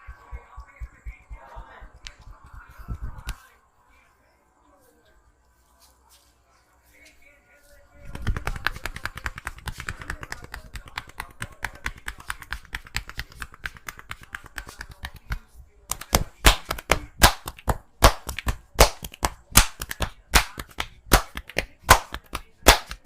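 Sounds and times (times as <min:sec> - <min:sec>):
finger tapping on head: 0:08.1 - 0:23.0
hand slaps on head: 0:08.2 - 0:23.0.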